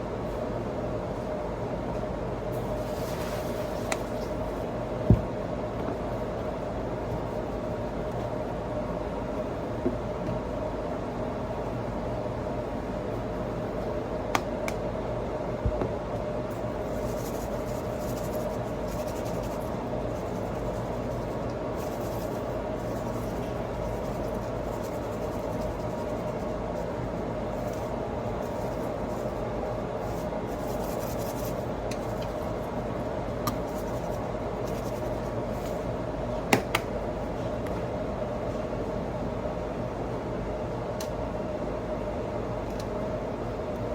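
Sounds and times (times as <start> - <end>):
steady mechanical hum: 0.0 - 43.9.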